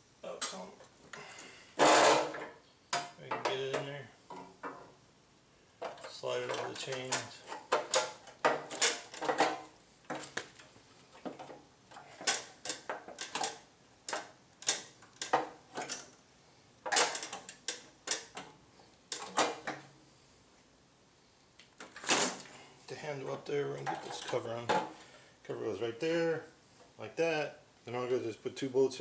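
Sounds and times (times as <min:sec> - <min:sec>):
metal cover clanking against frame: 0:01.8 - 0:04.9.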